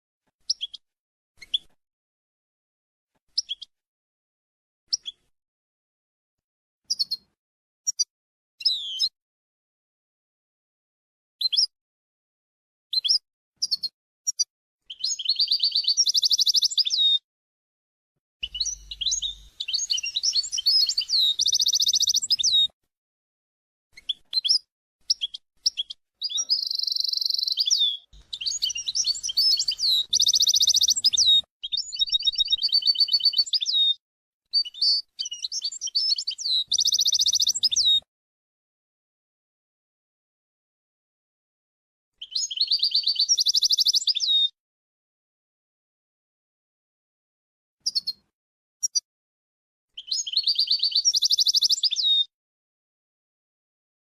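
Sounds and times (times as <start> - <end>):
bird chirping and trilling: 6.9 - 7.3, 7.9 - 9.1, 13.0 - 17.2, 18.4 - 22.7, 24.0 - 34.0, 34.6 - 38.0, 42.2 - 44.5, 50.0 - 52.3.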